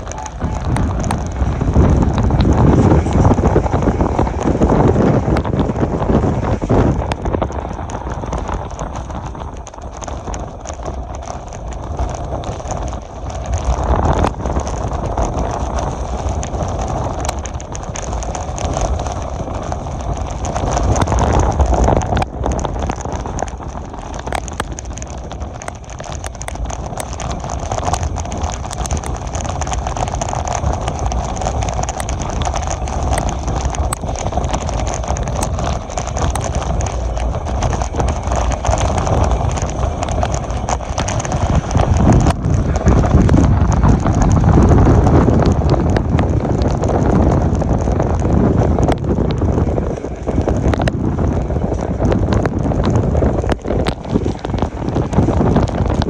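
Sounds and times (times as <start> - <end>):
clicks and clatter: 0.0 - 56.0
train wheels rumbling on rail: 0.0 - 56.0
wind noise: 0.0 - 56.0.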